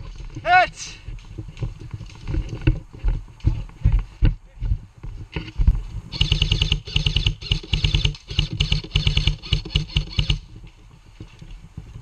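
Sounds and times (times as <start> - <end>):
airsoft rifle firing bursts: 6.1 - 10.4.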